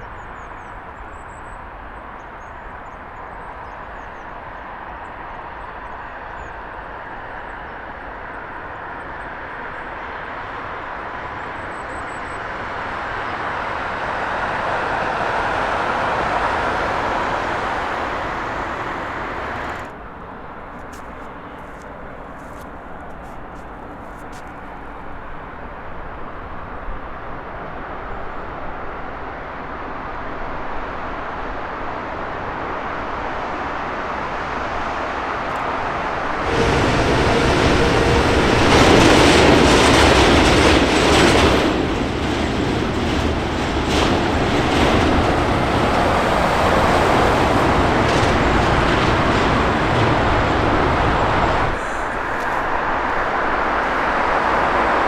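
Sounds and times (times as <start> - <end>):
jet engine roar: 9.5 - 20.0, 34.2 - 55.0.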